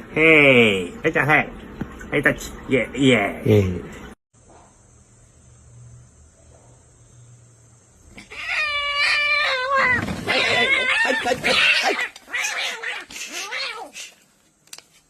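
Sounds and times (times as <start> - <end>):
cat yowling: 8.2 - 14.0.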